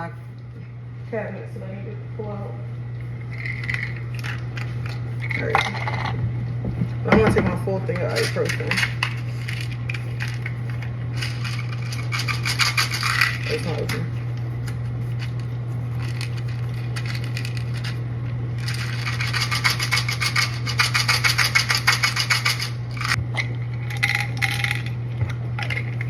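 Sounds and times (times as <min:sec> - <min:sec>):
steady low hum: 0:00.0 - 0:26.0
pills rattling in plastic bottle: 0:11.2 - 0:14.0, 0:18.6 - 0:23.2.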